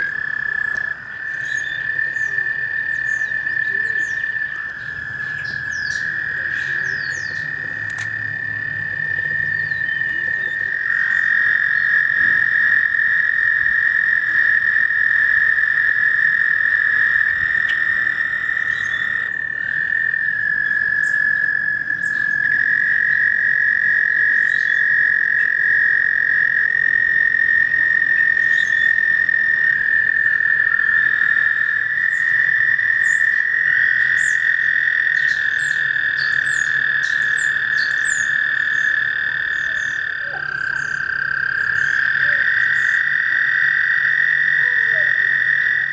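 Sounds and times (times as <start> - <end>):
frogs trilling: 0.0 - 45.9.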